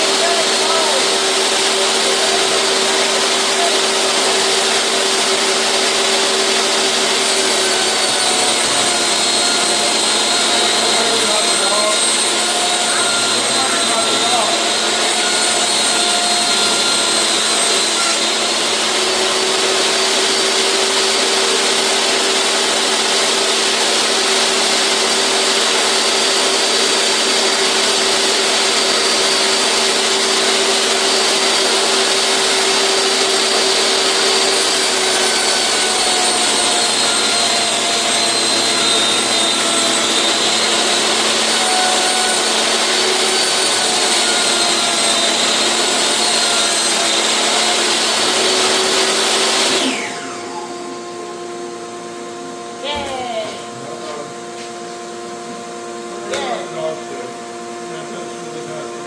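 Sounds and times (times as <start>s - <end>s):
table saw cutting plastic: 0.0s - 59.0s.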